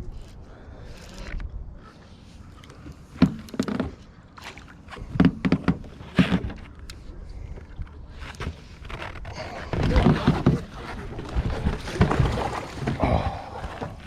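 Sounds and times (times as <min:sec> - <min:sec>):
knocks and thumps on boat hull: 0:05.0 - 0:06.6, 0:09.6 - 0:13.3.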